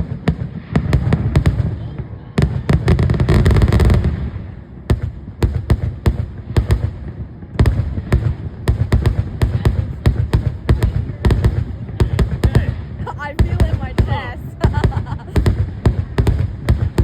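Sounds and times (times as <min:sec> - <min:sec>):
fireworks bangs and cracks: 0:00.0 - 0:17.0.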